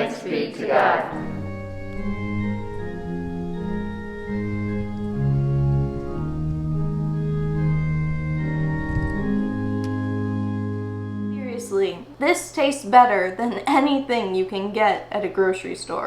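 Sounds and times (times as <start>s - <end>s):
organ playing held chords: 0.0s - 11.7s.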